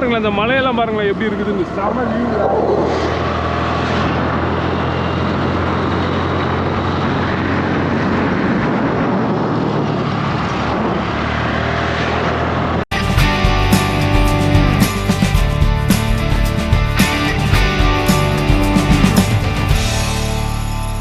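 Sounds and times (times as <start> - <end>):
wind rushing over microphone: 2.6 - 12.8
motorcycle engine running: 12.9 - 21.0.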